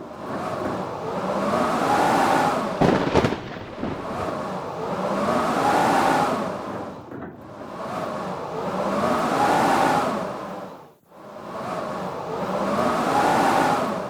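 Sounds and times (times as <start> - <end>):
wind howling in gusts: 0.0 - 14.0
sharp cracks: 2.8 - 4.7.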